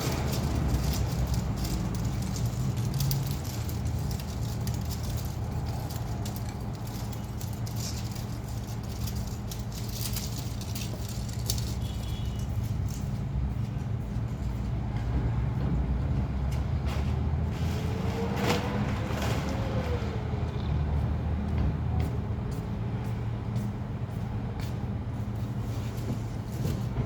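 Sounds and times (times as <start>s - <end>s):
light rattles and clicks: 0.0s - 15.6s
low engine hum: 11.8s - 27.0s.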